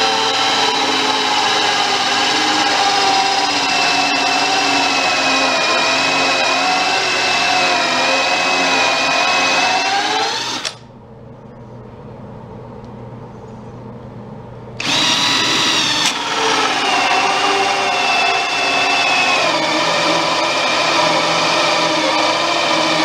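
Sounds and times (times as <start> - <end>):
power drill driving screws: 0.0 - 10.8, 14.8 - 23.0.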